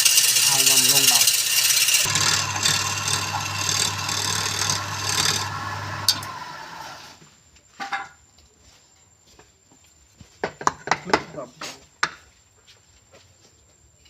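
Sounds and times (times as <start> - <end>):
rhythmic rasping on spinning wood: 0.0 - 6.2
wood lathe motor humming: 0.0 - 7.2.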